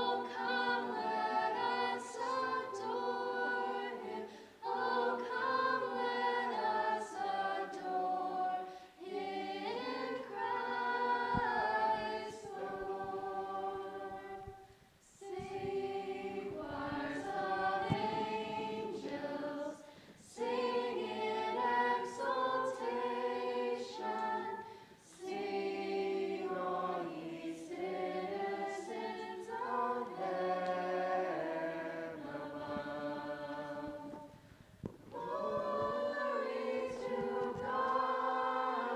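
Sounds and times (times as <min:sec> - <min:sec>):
group singing in harmony: 0:00.0 - 0:38.9.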